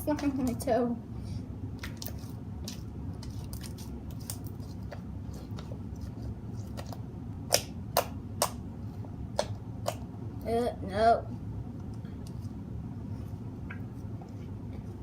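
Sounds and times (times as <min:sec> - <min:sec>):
sticky slime clicking and popping: 0:06.8 - 0:08.6, 0:09.3 - 0:10.1.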